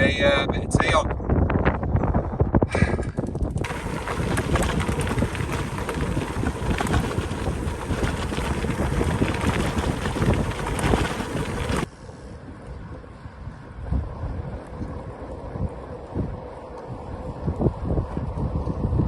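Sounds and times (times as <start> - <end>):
wind rushing over microphone: 0.0 - 19.0
scattered crackles: 3.6 - 11.9.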